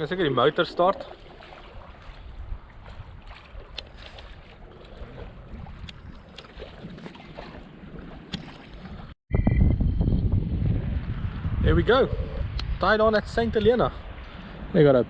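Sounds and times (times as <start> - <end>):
boat motor rumbling: 0.0 - 9.1
wind buffeting microphone: 0.0 - 15.0.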